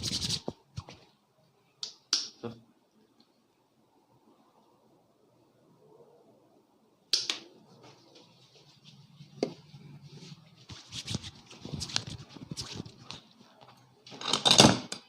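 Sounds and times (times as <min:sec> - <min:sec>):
scratchy rubbing on head: 0:00.0 - 0:01.0, 0:07.9 - 0:13.5.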